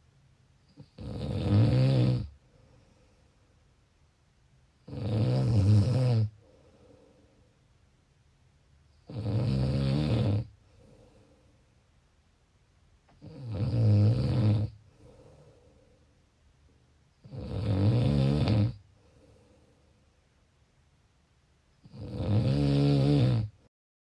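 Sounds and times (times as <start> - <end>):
loud snores: 0.7 - 2.4, 4.8 - 6.4, 9.0 - 10.6, 13.2 - 14.8, 17.2 - 18.8, 21.8 - 23.7
faint breathing: 2.4 - 3.7, 6.3 - 7.8, 10.6 - 11.8, 14.7 - 16.3, 18.8 - 20.2.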